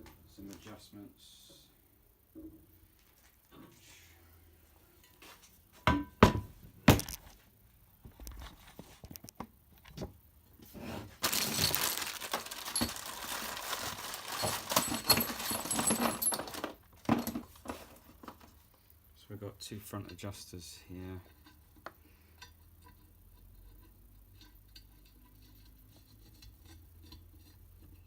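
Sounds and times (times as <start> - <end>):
metal scraping and rattling: 10.9 - 17.9.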